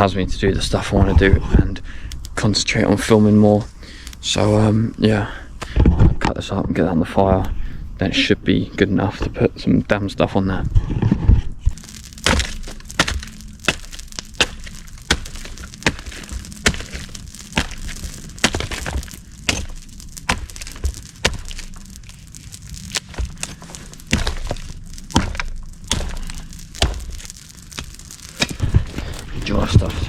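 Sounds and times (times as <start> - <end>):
wood cracking and knocking: 11.1 - 30.0.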